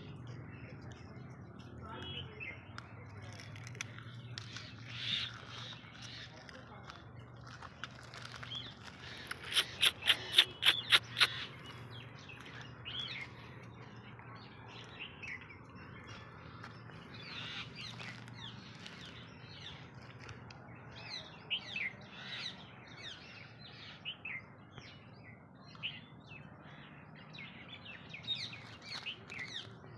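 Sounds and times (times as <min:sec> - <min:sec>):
small bird chirping: 0:01.8 - 0:20.4
sharp clicks: 0:09.0 - 0:11.5.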